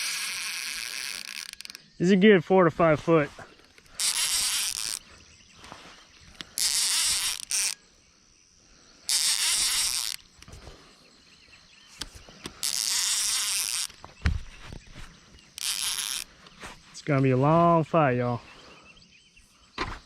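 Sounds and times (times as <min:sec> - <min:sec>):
fishing reel whirring: 0:00.0 - 0:02.0, 0:03.6 - 0:05.1, 0:06.3 - 0:07.9, 0:09.0 - 0:10.6, 0:12.0 - 0:14.0, 0:15.6 - 0:16.3.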